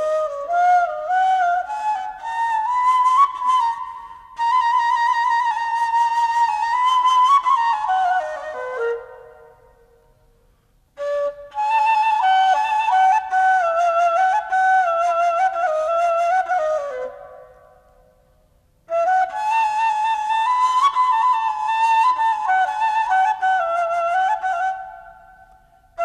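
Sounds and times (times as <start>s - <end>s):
solo wind instrument melody: 0.0s - 10.2s.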